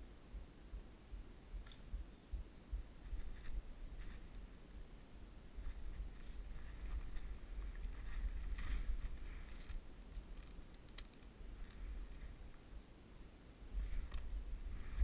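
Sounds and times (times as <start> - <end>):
rustling: 3.0 - 4.7, 5.4 - 12.8, 13.7 - 15.0.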